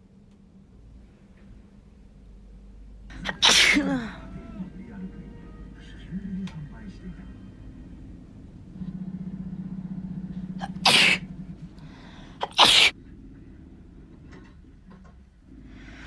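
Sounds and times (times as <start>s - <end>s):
person sneezing hoarsely: 3.2s - 4.2s, 10.6s - 11.2s, 12.4s - 13.0s
sharp intake of breath: 10.6s - 13.0s.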